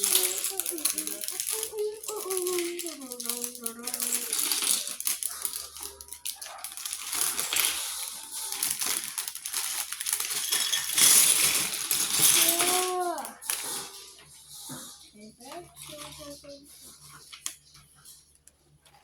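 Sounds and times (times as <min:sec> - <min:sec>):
plastic pieces clattering: 0:00.0 - 0:14.3.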